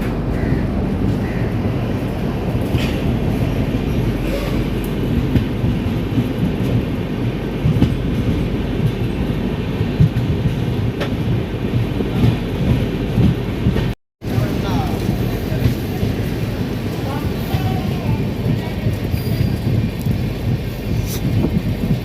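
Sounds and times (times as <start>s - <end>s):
train rumbling: 0.0s - 22.0s
train wheels clanking: 17.0s - 21.7s.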